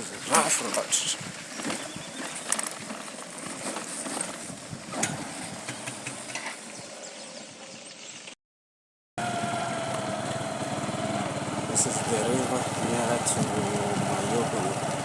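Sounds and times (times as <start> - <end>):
motorbike engine on dirt road: 0.0 - 7.1, 9.2 - 15.0.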